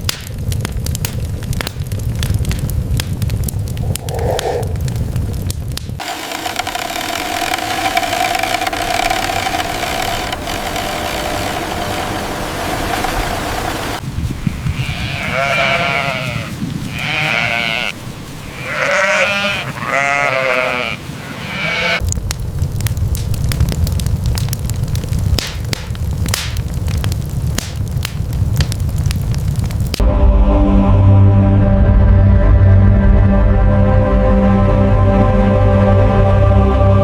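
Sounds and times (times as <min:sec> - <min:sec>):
steady hissing noise: 0:03.4 - 0:06.3, 0:06.9 - 0:23.4
sheep bleating: 0:14.7 - 0:22.0.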